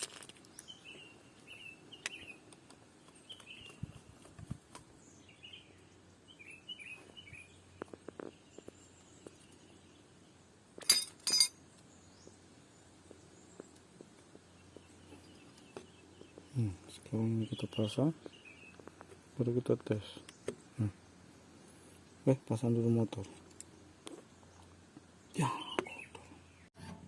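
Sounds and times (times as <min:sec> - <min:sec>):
faint bird chirps: 0:14.5 - 0:26.7.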